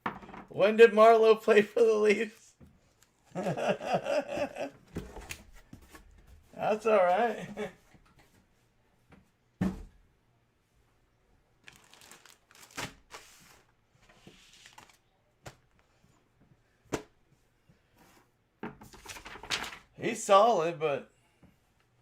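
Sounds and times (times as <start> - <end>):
packaging rustling and tearing: 11.6 - 13.7, 14.4 - 15.0.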